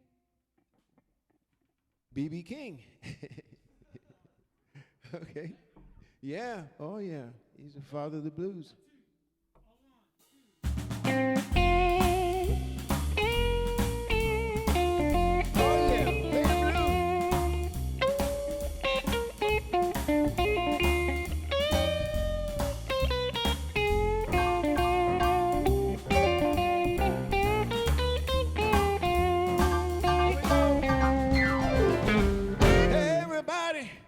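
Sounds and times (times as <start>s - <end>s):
bass and drums: 10.6s - 33.1s
electric guitar bent notes: 13.3s - 33.2s.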